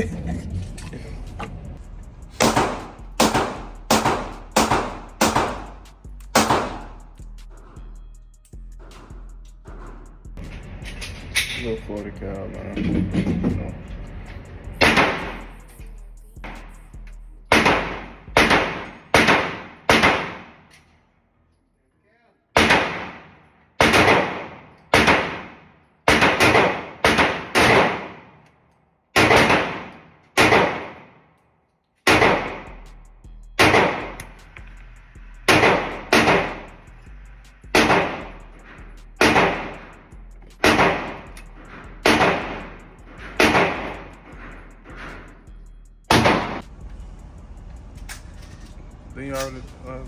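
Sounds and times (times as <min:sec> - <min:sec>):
steady low hum: 0:00.0 - 0:18.7, 0:32.4 - 0:50.0
handgun shots with echo: 0:02.4 - 0:05.6, 0:06.4 - 0:06.8, 0:14.8 - 0:15.3, 0:17.5 - 0:20.7, 0:22.6 - 0:28.4, 0:29.2 - 0:31.2, 0:32.1 - 0:32.7, 0:33.6 - 0:34.3, 0:35.5 - 0:36.7, 0:37.8 - 0:38.3, 0:39.2 - 0:39.8, 0:40.6 - 0:41.3, 0:42.0 - 0:42.7, 0:43.4 - 0:44.0, 0:46.1 - 0:46.6.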